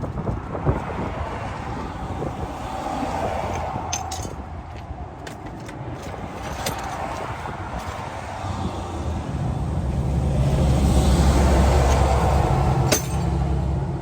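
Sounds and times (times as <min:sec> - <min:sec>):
hand tools clinking: 0:03.5 - 0:04.5, 0:05.2 - 0:08.0, 0:11.8 - 0:13.4.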